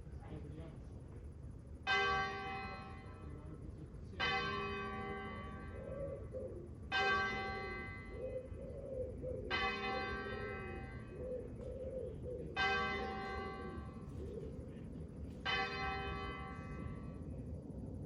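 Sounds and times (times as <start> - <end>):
church bell tolling: 1.9 - 5.9, 6.9 - 8.2, 9.5 - 11.2, 12.5 - 14.2, 15.4 - 17.3.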